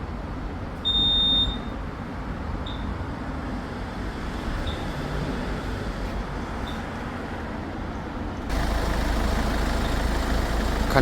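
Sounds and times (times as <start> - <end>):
car engine idling: 8.5 - 11.0.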